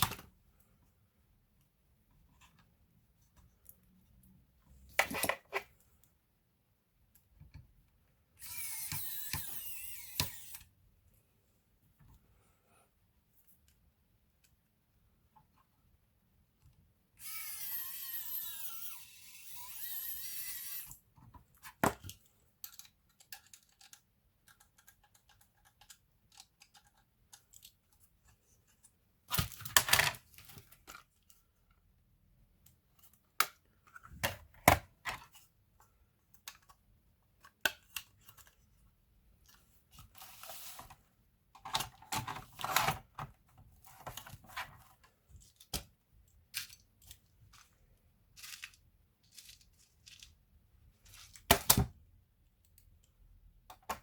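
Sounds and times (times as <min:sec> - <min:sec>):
clicks and taps of small parts: 0:21.6 - 0:28.0.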